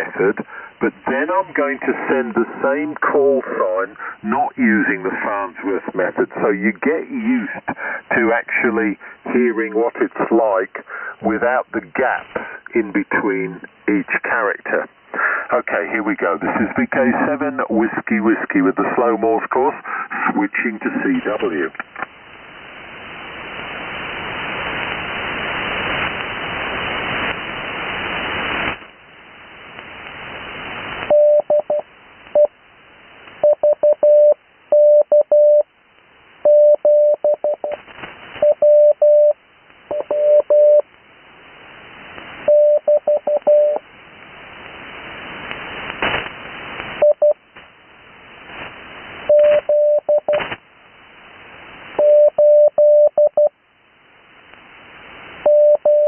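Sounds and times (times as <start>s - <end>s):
radio band hiss: 0.0s - 56.0s
morse code tone: 31.1s - 31.8s, 36.5s - 37.8s, 38.4s - 40.8s, 42.5s - 43.8s, 49.3s - 50.4s, 52.0s - 53.5s, 55.5s - 56.0s.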